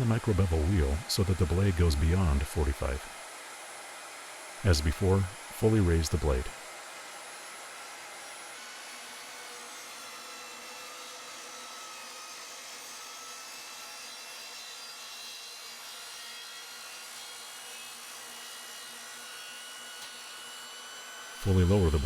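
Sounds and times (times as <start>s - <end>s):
table saw whining: 5.3s - 22.0s.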